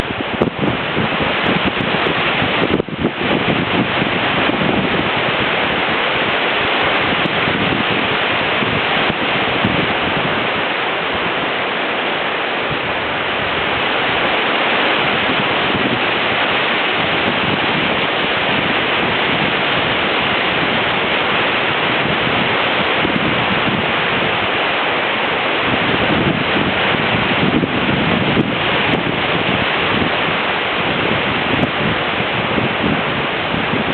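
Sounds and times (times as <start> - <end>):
wind buffeting microphone: 0.0 - 33.9
wind rushing through trees: 0.0 - 33.9.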